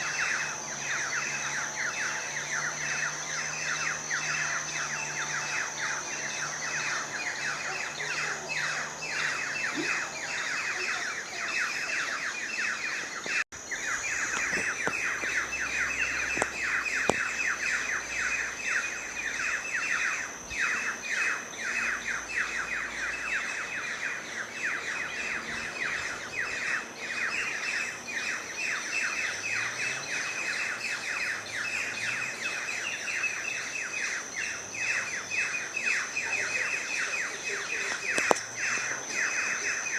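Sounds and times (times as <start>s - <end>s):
birds chirping in chorus: 0.0s - 39.9s
steady high-pitched tone: 0.0s - 39.9s.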